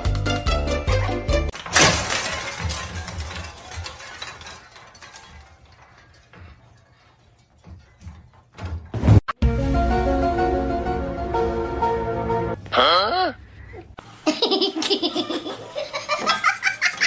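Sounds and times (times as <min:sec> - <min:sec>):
music: 0:00.0 - 0:01.5, 0:09.0 - 0:12.6
loud crash: 0:01.6 - 0:06.2.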